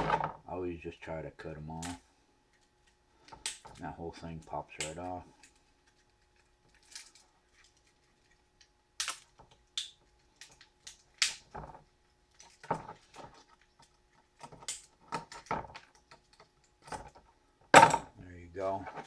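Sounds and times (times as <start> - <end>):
plastic parts snapping: 3.2 - 3.8, 9.0 - 11.8, 14.4 - 17.1.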